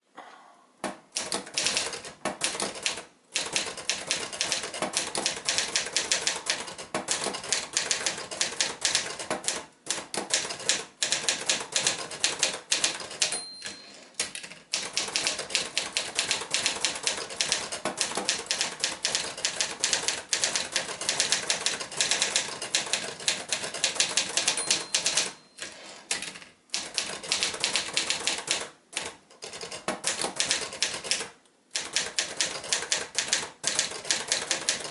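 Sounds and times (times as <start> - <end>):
typewriter keys clacking: 1.2 - 34.9
typewriter margin bell ringing: 13.0 - 14.1, 24.3 - 26.0.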